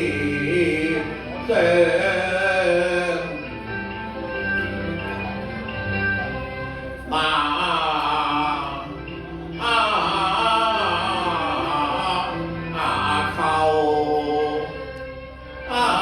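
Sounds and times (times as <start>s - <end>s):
opera singing: 0.0s - 3.5s, 7.0s - 15.0s, 15.6s - 16.0s
instrumental accompaniment: 0.0s - 16.0s.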